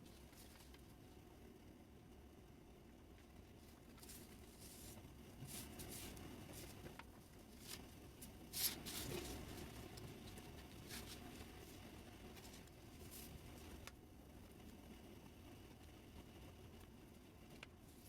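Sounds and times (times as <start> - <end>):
paper rustling and folding: 3.6 - 13.4.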